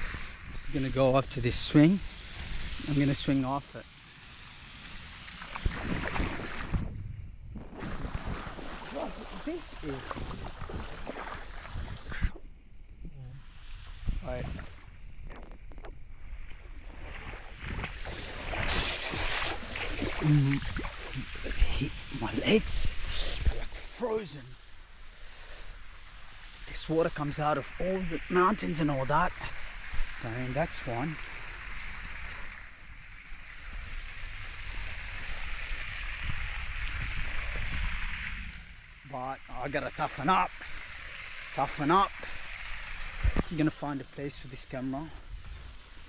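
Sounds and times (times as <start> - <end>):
water splashing in pool: 4.6 - 7.0, 7.6 - 12.4, 16.5 - 22.9
wind rumble on microphone: 5.5 - 23.9, 33.6 - 38.8
waterfall pouring into pool: 26.6 - 32.8, 33.5 - 43.8.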